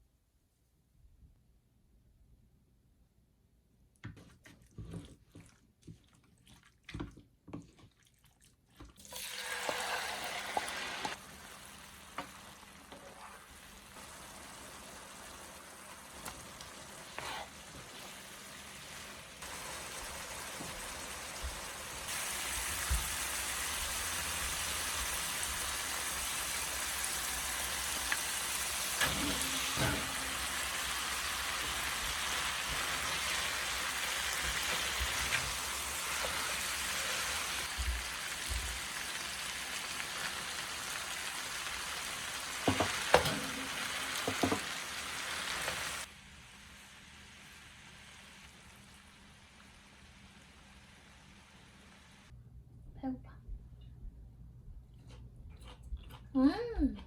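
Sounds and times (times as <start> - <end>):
food sizzling in a frying pan: 9.1 - 52.3.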